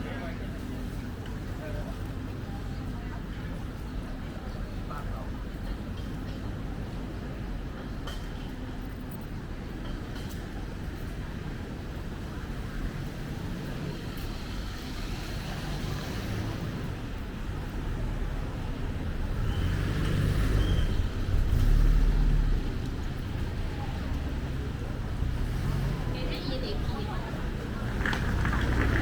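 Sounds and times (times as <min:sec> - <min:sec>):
road traffic rumble: 0:00.0 - 0:29.0
vehicle passing close: 0:19.1 - 0:29.0.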